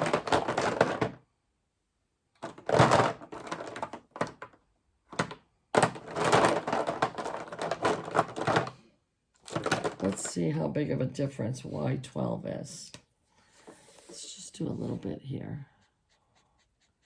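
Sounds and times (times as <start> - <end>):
plastic markers clattering: 2.4 - 8.7, 9.4 - 10.3.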